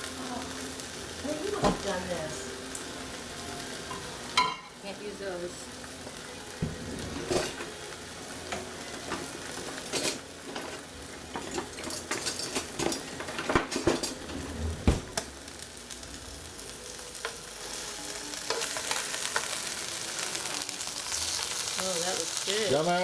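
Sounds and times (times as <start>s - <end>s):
food sizzling in frying pan: 0.0s - 23.0s
utensil scraping and knocking pan: 6.6s - 7.6s.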